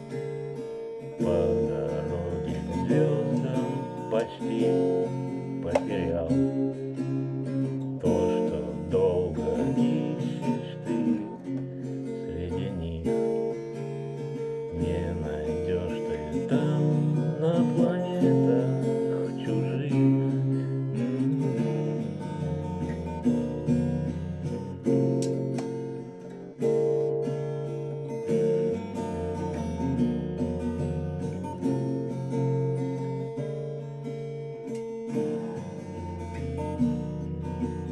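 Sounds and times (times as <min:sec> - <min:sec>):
acoustic guitar strumming chords: 0:00.0 - 0:37.9.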